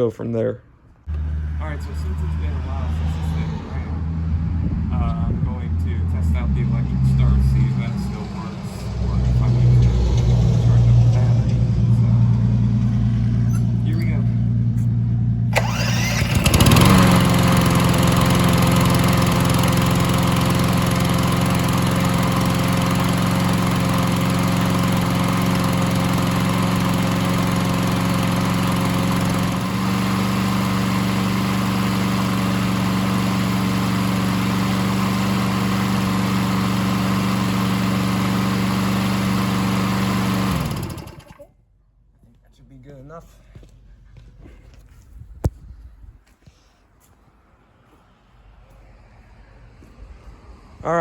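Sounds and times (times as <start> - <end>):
lawn mower engine running: 1.1 - 2.4, 7.8 - 41.5
electric starter cranking: 15.5 - 41.5.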